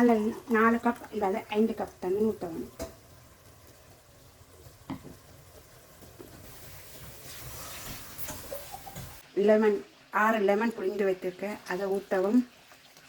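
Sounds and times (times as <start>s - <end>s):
water pouring into a pot: 0.0s - 13.0s
pot knock: 4.9s - 5.2s.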